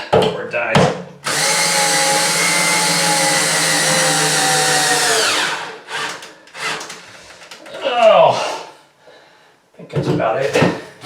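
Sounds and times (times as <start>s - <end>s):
cordless drill driving a screw: 1.2s - 7.0s.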